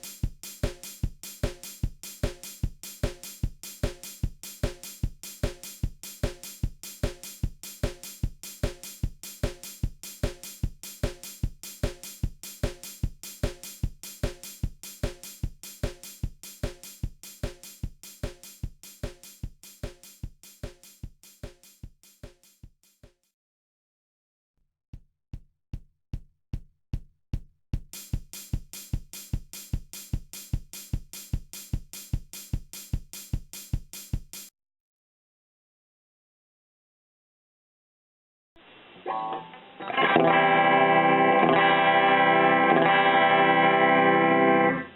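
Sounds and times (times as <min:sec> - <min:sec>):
steady drum beat: 0:00.0 - 0:22.8, 0:25.0 - 0:34.5
hissing hi-hat strokes: 0:28.0 - 0:34.5.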